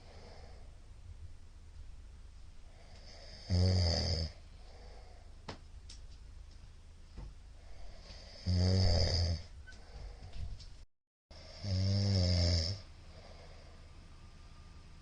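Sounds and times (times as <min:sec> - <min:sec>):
man snoring heavily: 0:02.7 - 0:05.1, 0:07.7 - 0:09.5, 0:11.3 - 0:13.6.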